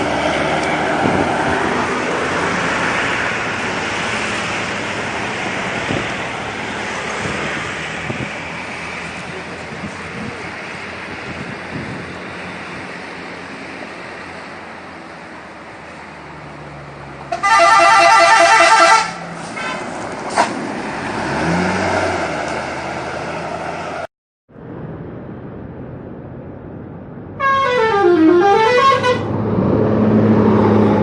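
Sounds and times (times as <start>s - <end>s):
road and engine noise: 0.0s - 31.0s
warbling musical bus horn: 17.3s - 19.8s, 27.4s - 29.4s.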